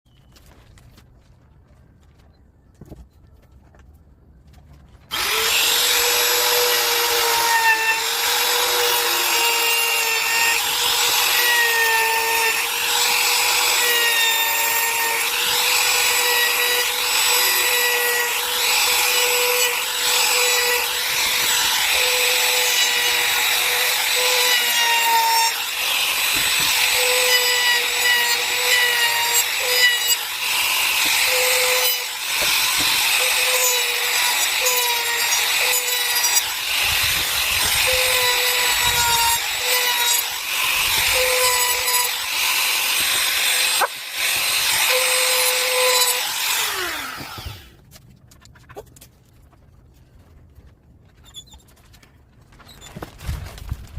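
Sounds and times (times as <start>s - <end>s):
wood router cutting wood: 5.1s - 47.8s.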